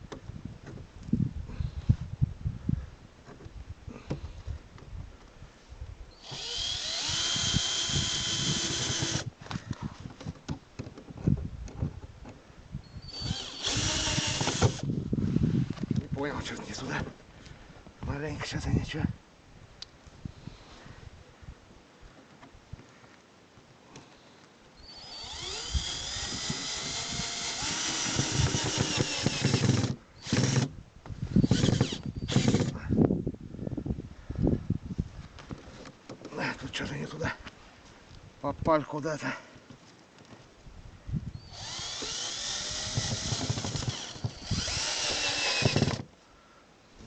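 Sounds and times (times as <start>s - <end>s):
electric drill driving screws: 6.2s - 9.3s, 13.1s - 14.9s, 24.8s - 30.7s, 31.4s - 32.8s, 41.4s - 46.1s.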